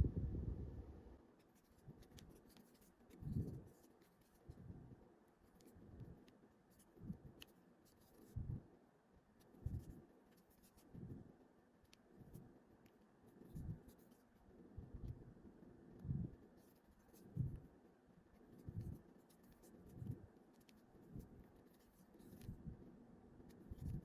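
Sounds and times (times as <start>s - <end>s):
crochet hook scratching yarn: 1.4s - 4.6s, 5.4s - 8.4s, 9.4s - 11.0s, 11.8s - 14.4s, 18.3s - 22.6s, 23.5s - 24.0s.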